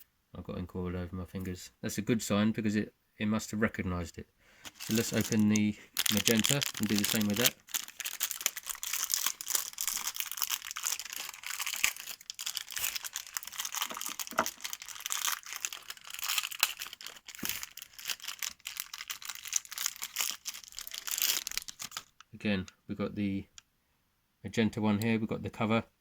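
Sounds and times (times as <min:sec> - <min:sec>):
packaging crinkling and tearing: 0:04.7 - 0:22.3.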